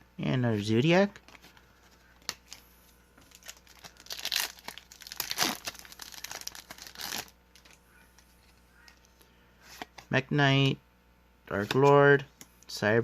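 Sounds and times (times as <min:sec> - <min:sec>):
foil wrapper tearing and crinkling: 0:03.3 - 0:07.8.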